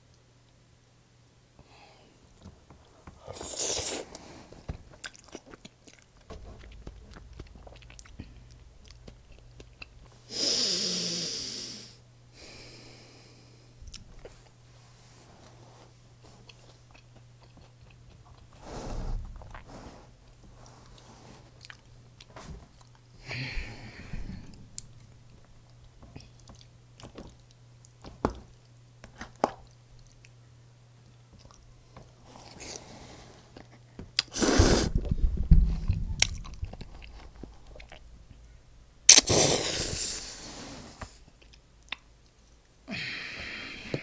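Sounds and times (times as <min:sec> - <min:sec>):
quiet chewing: 0:02.3 - 0:10.3, 0:13.8 - 0:14.7, 0:15.4 - 0:23.1, 0:24.4 - 0:30.4, 0:31.0 - 0:39.2, 0:40.9 - 0:42.8
crunchy bites into fried food: 0:39.1 - 0:39.5.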